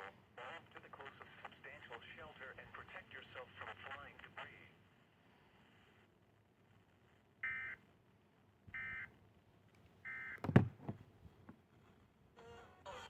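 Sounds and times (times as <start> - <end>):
loud thump: 10.4 - 11.0.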